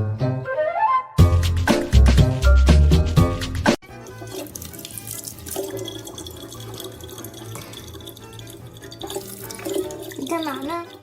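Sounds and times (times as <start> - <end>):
music: 0.0 - 11.0
water running: 3.8 - 11.0.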